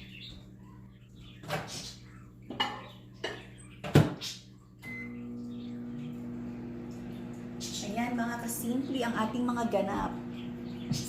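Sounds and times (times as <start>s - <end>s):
microwave oven humming: 4.5s - 11.0s
microwave beep: 4.8s - 7.6s.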